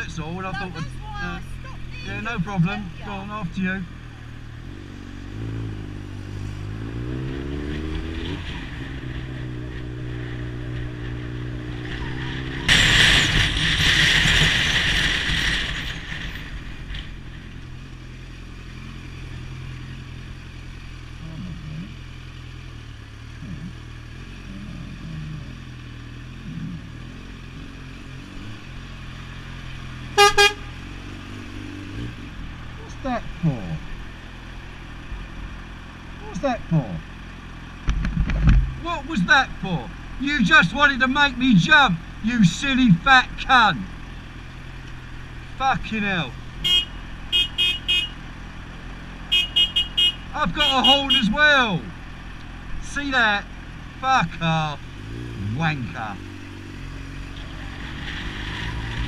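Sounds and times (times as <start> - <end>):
car engine revving: 0.0 - 59.0
lorry horn blast: 30.2 - 30.8, 46.6 - 48.2, 49.3 - 51.3.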